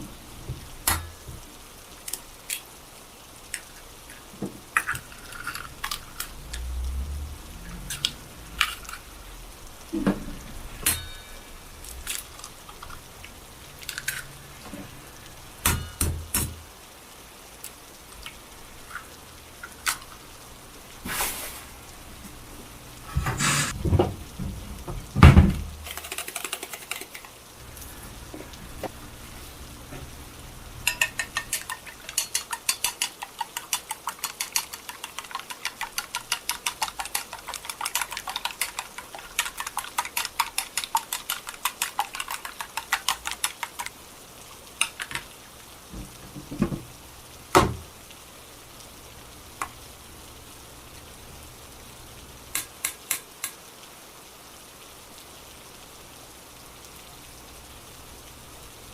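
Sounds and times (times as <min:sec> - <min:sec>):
utensil clinking against a bowl: 0:30.8 - 0:43.9.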